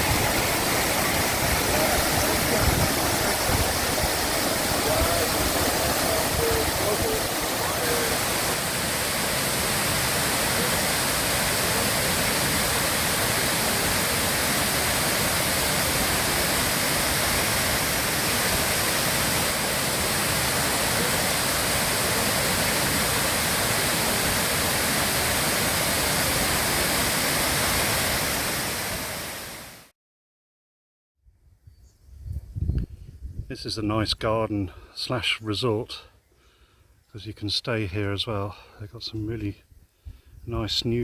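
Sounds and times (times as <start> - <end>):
waterfall roaring: 0.0 - 29.8.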